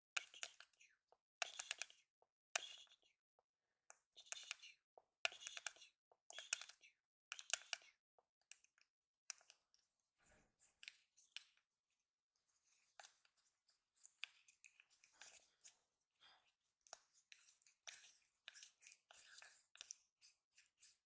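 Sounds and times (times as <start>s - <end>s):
plastic tube clicking and crackling: 1.4s - 2.0s, 5.3s - 7.9s, 16.8s - 21.0s.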